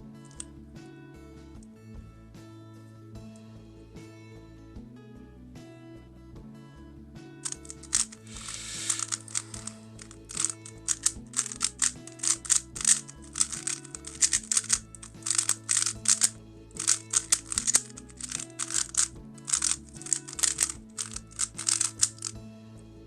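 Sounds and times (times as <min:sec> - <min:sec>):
background music: 0:00.0 - 0:23.0
puzzle cube clicking: 0:07.4 - 0:22.4.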